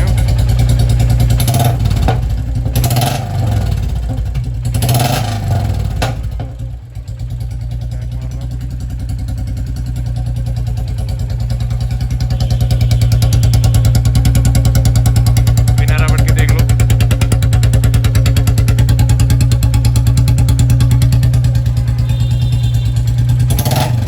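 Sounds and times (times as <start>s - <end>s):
motorcycle engine revving: 0.0s - 24.0s
exhaust cracks: 10.7s - 24.0s.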